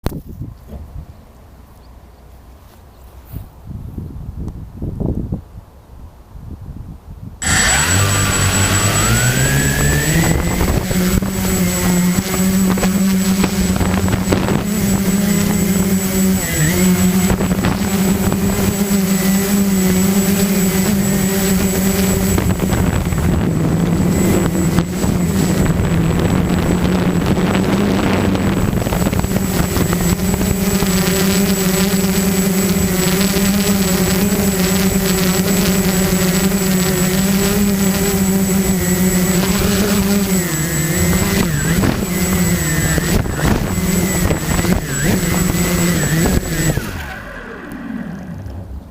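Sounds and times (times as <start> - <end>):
thin high tone: 7.4 - 37.0
quadcopter propellers buzzing: 7.4 - 48.9.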